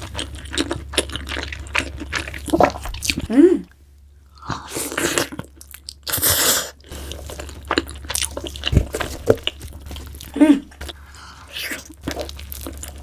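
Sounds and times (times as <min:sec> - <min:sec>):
chewing with mouth clicks: 0:00.0 - 0:03.3.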